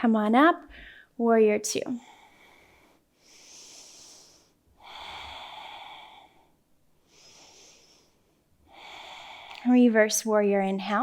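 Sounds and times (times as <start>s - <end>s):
woman breathing: 0.7s - 1.2s, 2.0s - 9.8s.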